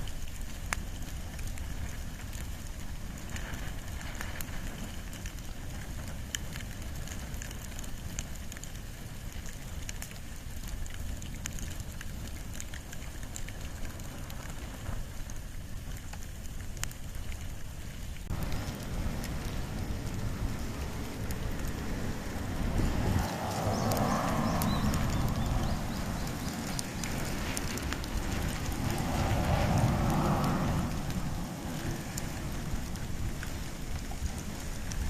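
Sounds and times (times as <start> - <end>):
fire crackling and popping: 0.0 - 35.0.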